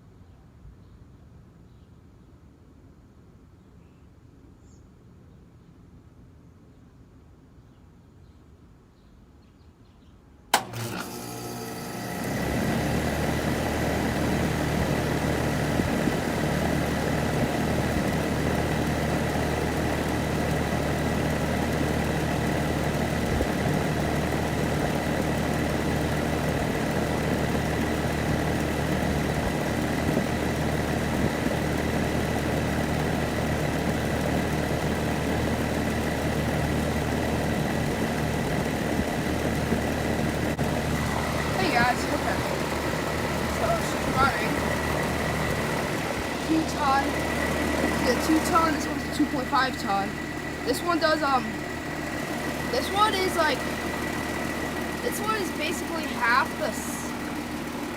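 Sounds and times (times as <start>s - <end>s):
air conditioner switch click: 10.5s - 11.2s
air conditioner running hum: 10.6s - 57.9s.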